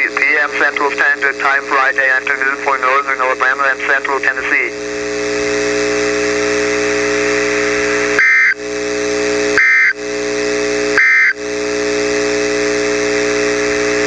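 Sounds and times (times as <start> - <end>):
radio hum and hiss: 0.0 - 14.0
screechy data bursts: 8.2 - 8.6, 9.6 - 10.0, 11.0 - 11.4.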